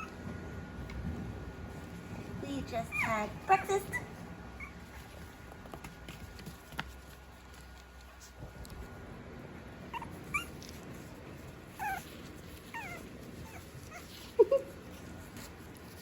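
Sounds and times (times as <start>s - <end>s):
puppies whimpering: 0.0s - 0.2s, 2.8s - 5.1s, 9.8s - 15.9s
puppy yips: 2.9s - 5.0s, 9.9s - 10.8s, 11.8s - 14.8s.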